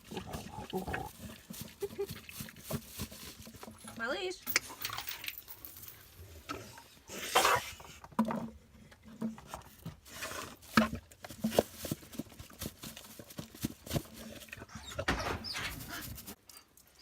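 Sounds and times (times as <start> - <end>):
dog lapping and chewing: 0.0 - 3.8.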